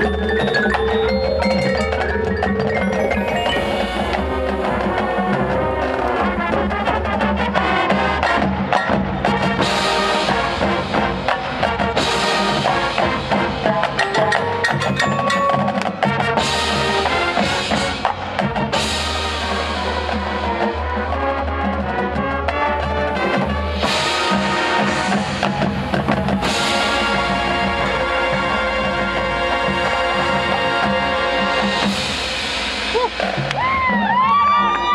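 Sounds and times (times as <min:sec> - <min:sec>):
wood block: 0:00.0 - 0:04.3, 0:13.9 - 0:16.1
mallet percussion: 0:00.0 - 0:06.6, 0:13.6 - 0:18.0
marching band playing: 0:00.0 - 0:34.9
snare and bass drums: 0:00.0 - 0:34.9.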